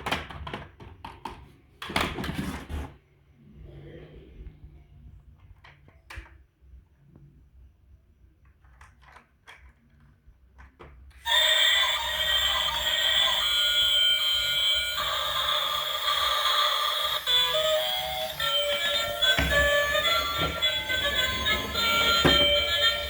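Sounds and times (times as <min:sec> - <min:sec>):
shrill electronic tune: 0:11.3 - 0:23.0.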